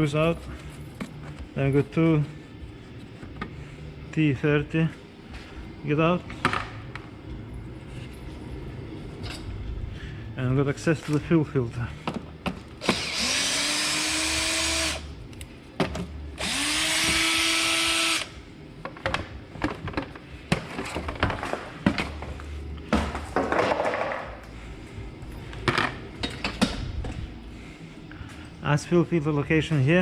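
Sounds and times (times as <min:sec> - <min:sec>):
cordless drill running: 0:12.8 - 0:15.1, 0:16.4 - 0:18.3
tool and parts clicks and knocks: 0:15.3 - 0:16.2, 0:18.8 - 0:22.3, 0:25.5 - 0:27.2.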